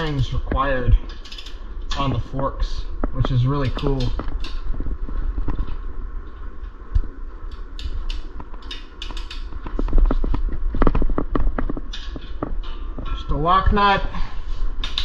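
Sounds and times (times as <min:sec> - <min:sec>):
low steady hum: 0:00.0 - 0:15.0
wrenches clicking on metal: 0:01.1 - 0:02.1.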